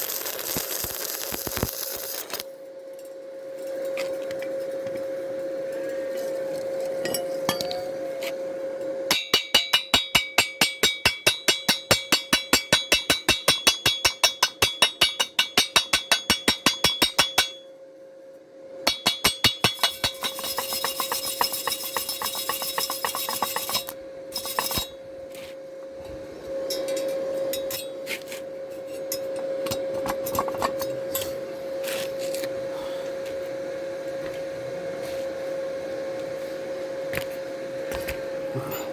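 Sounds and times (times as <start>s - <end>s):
steady hum: 0.0s - 38.9s
chipping hammer tapping steel: 9.1s - 17.6s, 18.9s - 25.0s
scratching on metal: 18.9s - 25.0s.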